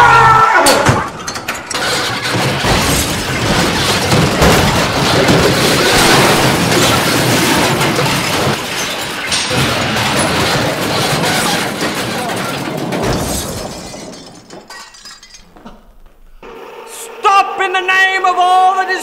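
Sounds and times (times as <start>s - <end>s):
sharp mechanical knocks: 0.6s - 13.7s
dense rattling clatter: 0.7s - 15.9s.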